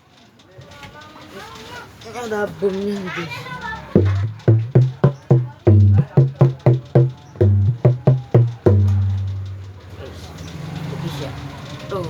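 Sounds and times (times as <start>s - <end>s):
hand drum strokes: 4.0s - 9.9s.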